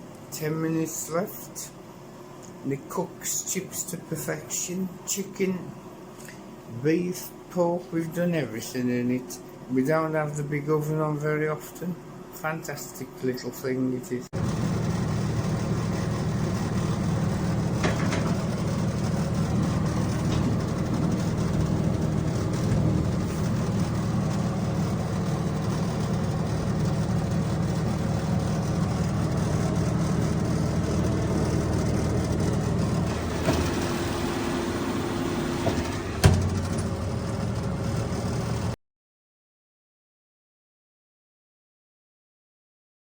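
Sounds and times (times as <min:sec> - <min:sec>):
air fryer fan humming: 0:00.0 - 0:38.8.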